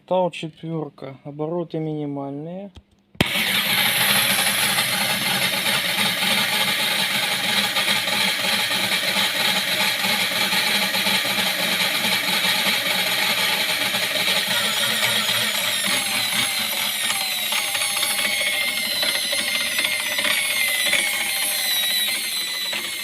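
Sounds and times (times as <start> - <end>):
drill press motor hum: 3.2 - 23.0
drill bit cutting metal hiss: 6.1 - 23.0.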